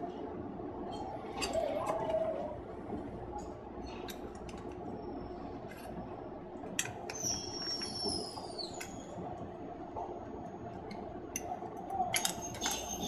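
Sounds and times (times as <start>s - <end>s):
metal lock parts clinking: 12.1s - 13.0s
metallic squeal of sliding parts: 12.2s - 13.0s.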